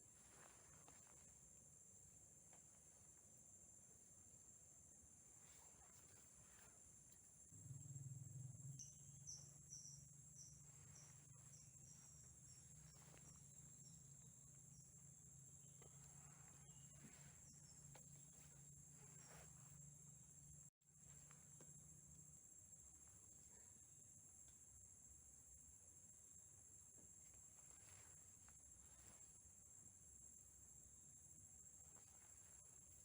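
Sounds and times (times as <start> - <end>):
low steady hum: 0.0 - 23.7
high-pitched insect chorus: 0.0 - 33.0.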